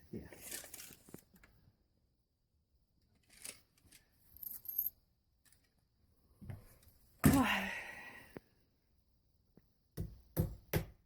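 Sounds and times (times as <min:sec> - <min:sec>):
scrapes and rustles: 0:00.2 - 0:01.6.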